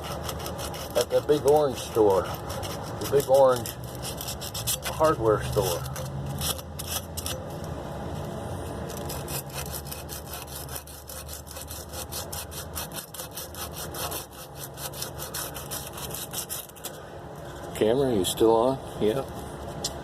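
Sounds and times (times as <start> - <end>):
sandpaper scratching on metal pipe: 0.0 - 7.4, 8.9 - 17.0.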